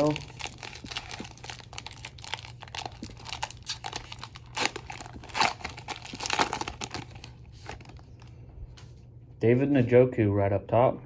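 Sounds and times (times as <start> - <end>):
wrapper tearing: 0.0 - 8.1
wrapper crinkling: 0.0 - 8.3.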